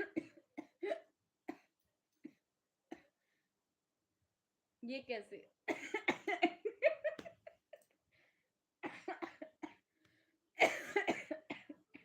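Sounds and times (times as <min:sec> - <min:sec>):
person coughing: 0:10.6 - 0:11.8.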